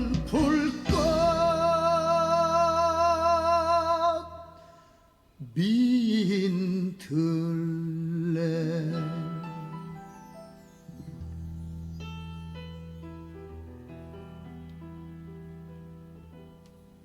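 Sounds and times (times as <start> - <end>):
person singing long notes: 0.0 - 4.6, 5.4 - 10.2.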